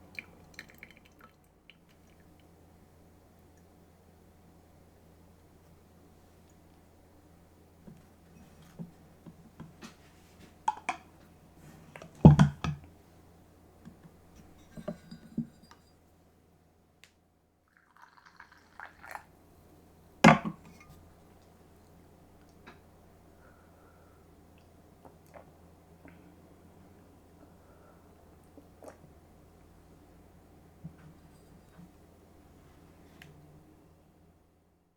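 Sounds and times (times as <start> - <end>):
glass and crockery clinking: 14.6 - 16.0, 20.3 - 20.9.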